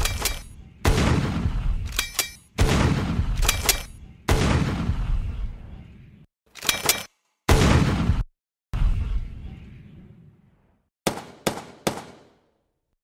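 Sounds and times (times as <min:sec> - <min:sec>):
gunshot blasts: 0:00.8 - 0:01.8, 0:02.6 - 0:03.5, 0:04.3 - 0:05.3, 0:07.5 - 0:08.3.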